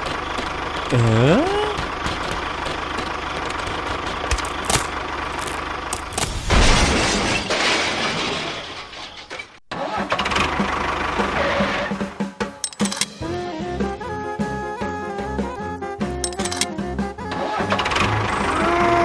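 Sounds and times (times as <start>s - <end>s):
clicks: 12.6s - 13.2s, 16.2s - 16.7s.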